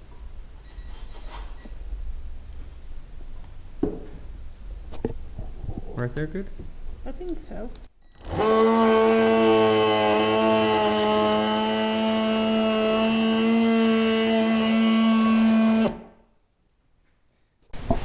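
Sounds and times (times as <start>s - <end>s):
power tool cutting plastic: 8.1s - 16.2s.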